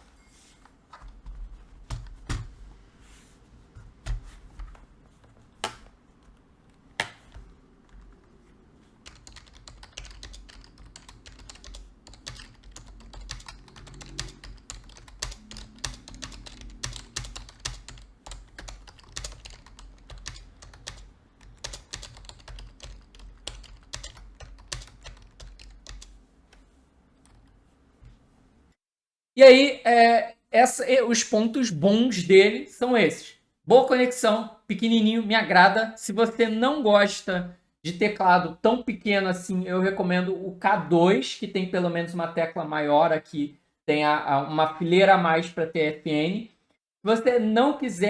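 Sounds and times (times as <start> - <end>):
keyboard typing clicks: 9.1 - 26.2.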